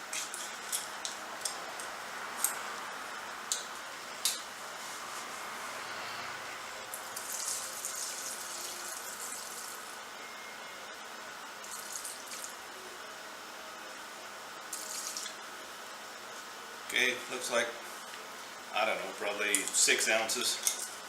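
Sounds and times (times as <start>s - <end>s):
liquid pouring into a jug: 7.2s - 9.9s, 11.6s - 12.6s, 14.7s - 15.4s.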